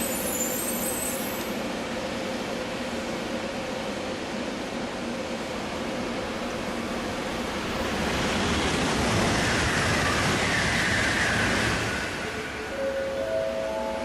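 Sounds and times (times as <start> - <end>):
train rushing past: 5.8 - 14.0.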